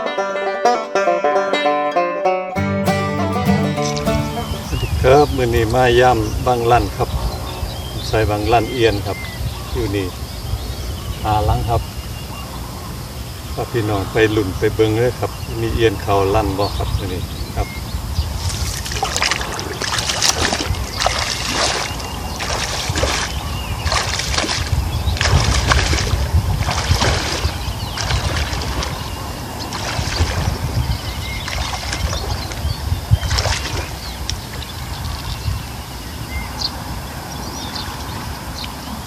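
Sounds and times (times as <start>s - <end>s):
wading through shallow water: 16.7s - 35.3s.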